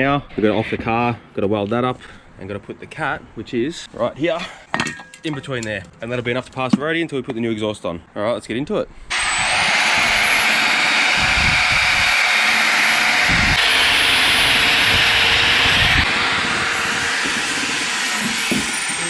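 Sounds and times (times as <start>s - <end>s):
angle grinder grinding metal: 9.1s - 19.0s.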